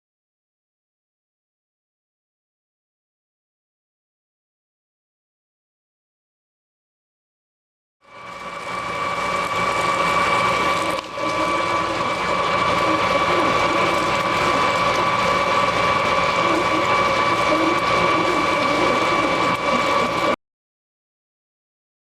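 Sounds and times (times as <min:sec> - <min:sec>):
machine tool whining: 0:08.0 - 0:20.4.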